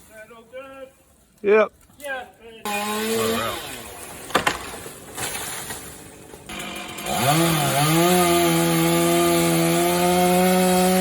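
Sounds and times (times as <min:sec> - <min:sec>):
chainsaw revving: 0:02.7 - 0:04.2, 0:06.5 - 0:11.0.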